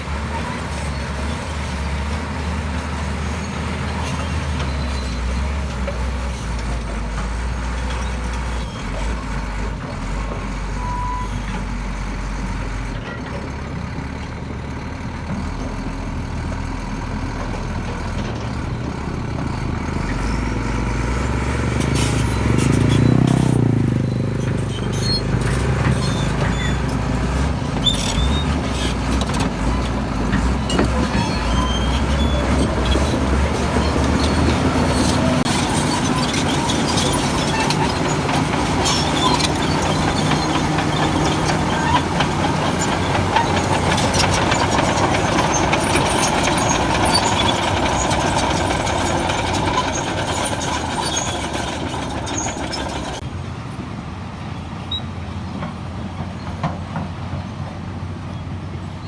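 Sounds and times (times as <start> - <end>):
diesel machinery rumbling: 0.0 - 59.0
knocks and clanks: 24.4 - 53.2.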